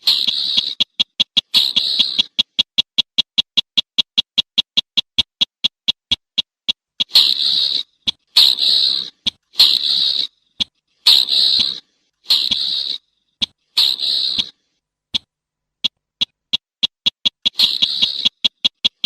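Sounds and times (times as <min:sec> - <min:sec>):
bird harsh grating calls: 0:00.0 - 0:02.6, 0:07.0 - 0:16.4, 0:17.3 - 0:19.0
bird sharp ticking notes: 0:00.0 - 0:14.5, 0:15.2 - 0:19.0.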